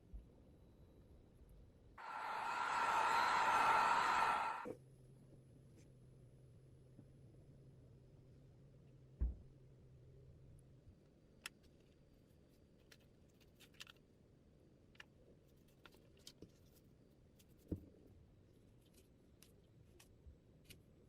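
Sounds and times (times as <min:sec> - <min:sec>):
faint small clicks and taps: 0:11.0 - 0:14.1, 0:14.9 - 0:21.0.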